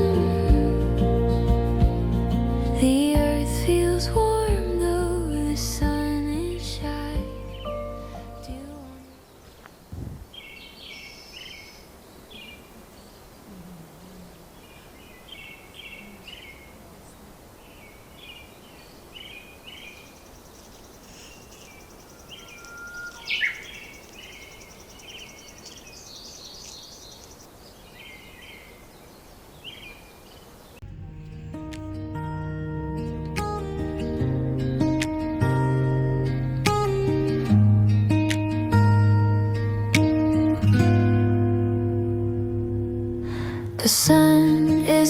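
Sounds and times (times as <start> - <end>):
outdoor background hiss: 0.0 - 45.0
birds chirping: 8.9 - 33.7
high bird trill: 19.4 - 27.7
sharp downward bird call: 21.0 - 27.4.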